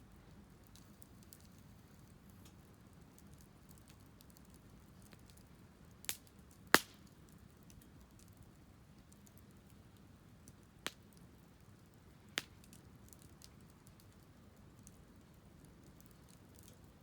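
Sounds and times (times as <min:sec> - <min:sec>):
wood fire crackling: 0:00.1 - 0:17.0
sharp pops of fire: 0:03.2 - 0:08.3, 0:10.4 - 0:11.2, 0:12.2 - 0:14.2.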